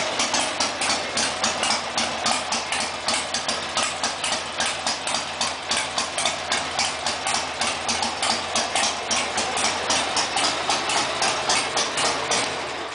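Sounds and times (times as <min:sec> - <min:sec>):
engine idling with pulsing beat: 0:00.0 - 0:12.9.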